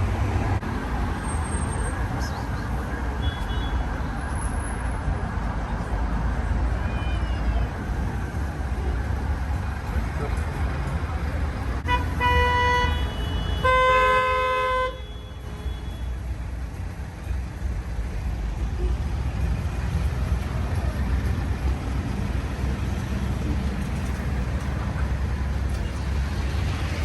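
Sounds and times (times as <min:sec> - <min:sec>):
traffic rumble: 0:00.0 - 0:27.0
vehicle horn honking: 0:11.8 - 0:16.2.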